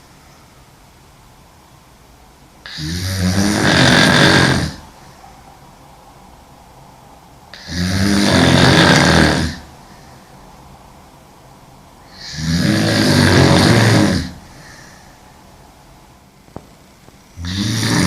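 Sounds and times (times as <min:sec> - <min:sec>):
woman snoring: 0:02.6 - 0:05.0, 0:07.5 - 0:09.7, 0:12.0 - 0:14.9, 0:17.4 - 0:18.0
quiet breathing: 0:04.8 - 0:12.5, 0:13.1 - 0:16.3.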